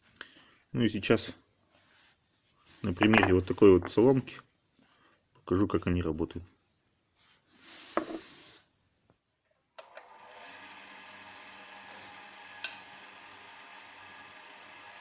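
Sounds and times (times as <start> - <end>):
lathe motor humming: 9.9 - 15.0.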